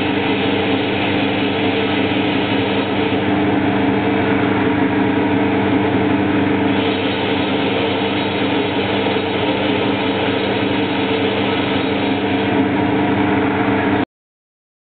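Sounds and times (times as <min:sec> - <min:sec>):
lathe motor hum: 0:00.0 - 0:14.0
hiss: 0:06.7 - 0:12.5.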